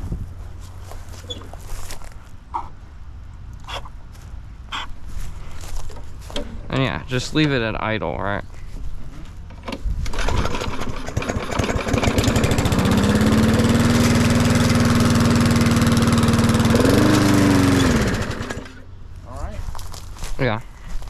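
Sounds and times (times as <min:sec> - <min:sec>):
lawn mower engine running: 0:09.2 - 0:19.0.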